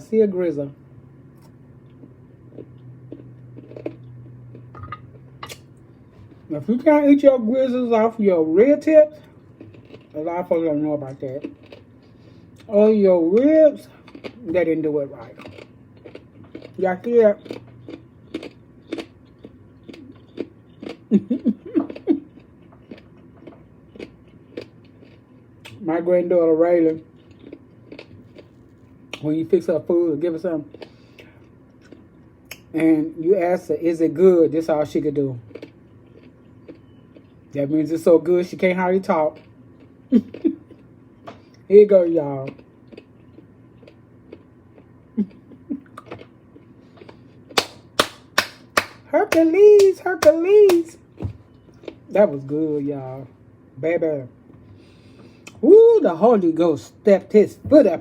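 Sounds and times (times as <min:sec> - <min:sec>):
chewing and crunching: 0:01.3 - 0:07.2, 0:08.7 - 0:25.8, 0:26.8 - 0:29.3, 0:30.5 - 0:32.8, 0:35.3 - 0:37.7, 0:38.4 - 0:48.5.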